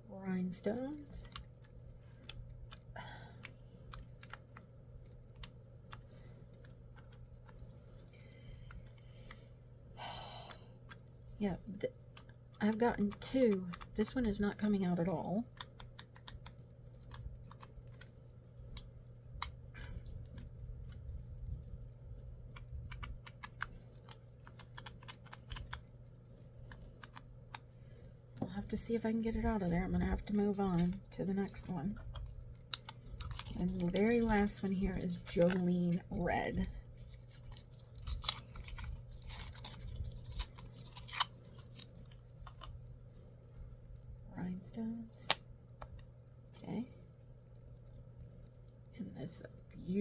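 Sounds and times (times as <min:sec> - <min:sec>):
low steady hum: 0:00.0 - 0:50.0
packaging being handled: 0:15.4 - 0:42.9.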